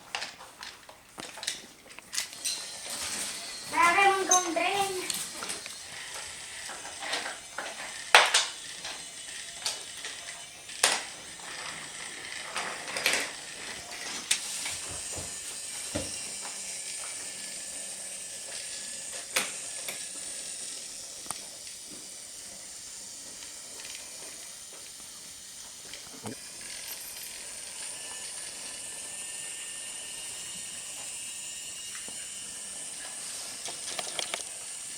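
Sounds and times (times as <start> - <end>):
toy train pieces clicking: 0.1 - 34.9.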